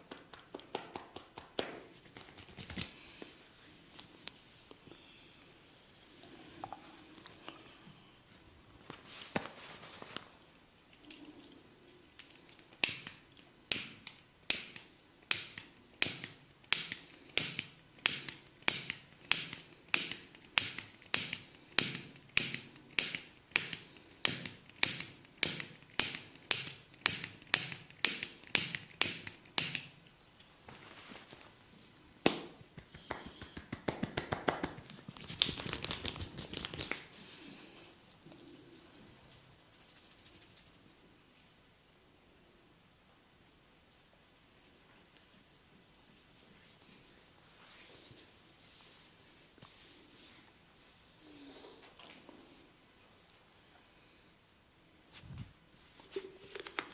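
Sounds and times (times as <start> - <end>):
percussive massage slapping: 0.0 - 2.8, 32.2 - 37.1
rustling handling sounds: 8.3 - 12.5, 30.5 - 32.0, 34.7 - 41.0, 55.1 - 56.9.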